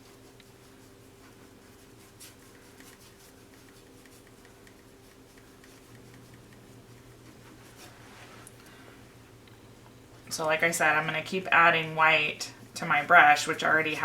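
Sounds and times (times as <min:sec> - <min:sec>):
paintbrush scrubbing on canvas: 0:00.0 - 0:08.5
steady low hum: 0:00.0 - 0:14.0.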